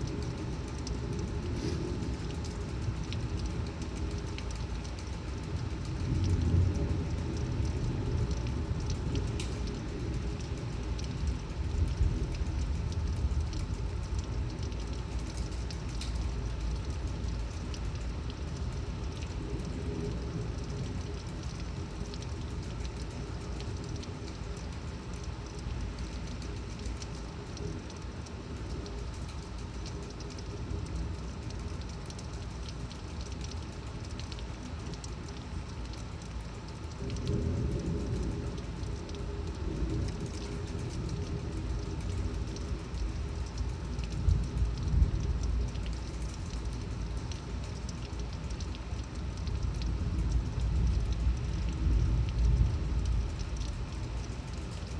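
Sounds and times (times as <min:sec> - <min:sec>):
heavy rain pouring: 0:00.0 - 0:54.9
raindrops ticking: 0:00.0 - 0:54.9
low thunder rumble: 0:05.2 - 0:24.9, 0:36.9 - 0:47.0, 0:49.7 - 0:54.7.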